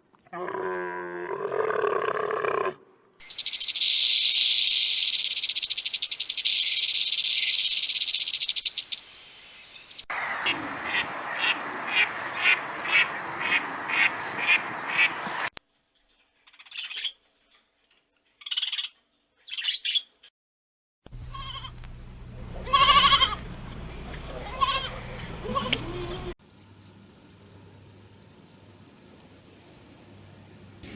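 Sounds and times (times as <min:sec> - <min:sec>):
high rattling buzz: 0:03.2 - 0:09.1
low steady hum: 0:21.1 - 0:30.9.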